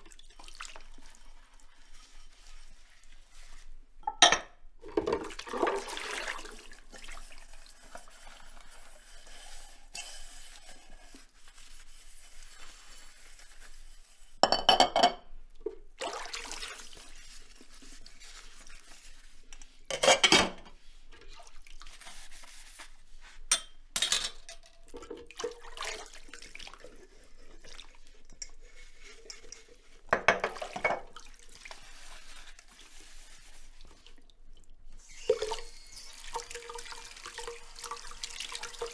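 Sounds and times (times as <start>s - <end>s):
dishes clinking in water: 4.0s - 6.5s, 14.4s - 16.3s, 19.5s - 20.8s, 23.5s - 31.4s.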